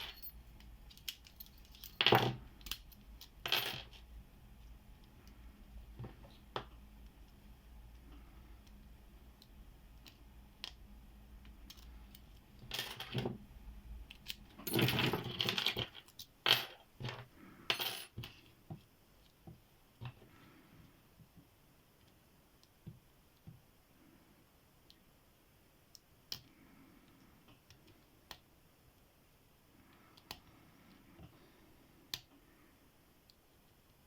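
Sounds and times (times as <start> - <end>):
padlocks and keys jangling: 0.0 - 3.4.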